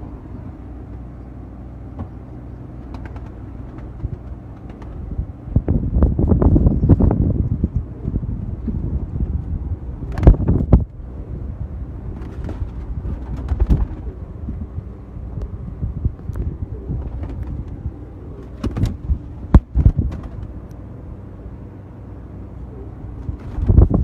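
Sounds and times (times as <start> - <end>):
wind rumble on microphone: 0.0 - 24.0
pigeons cooing: 6.6 - 8.9, 11.0 - 24.0.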